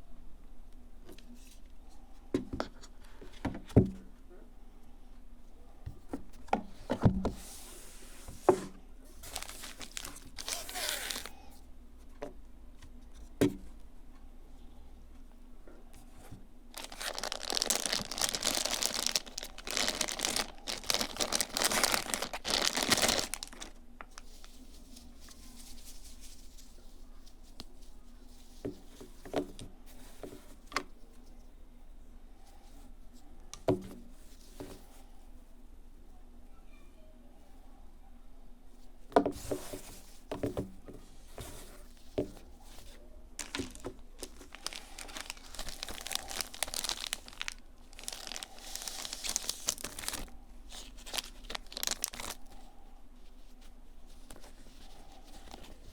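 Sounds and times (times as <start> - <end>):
wrapping crinkling and tearing: 9.2 - 11.4, 16.7 - 28.4, 42.6 - 52.7, 54.1 - 55.9.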